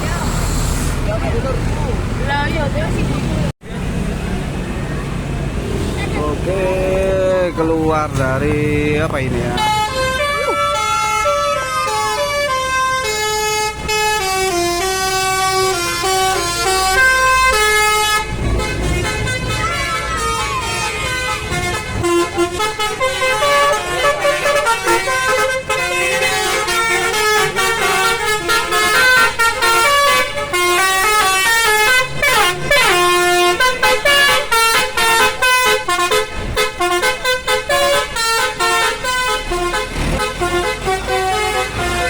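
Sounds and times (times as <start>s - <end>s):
multi-tone air horn melody: 8.9s - 42.0s.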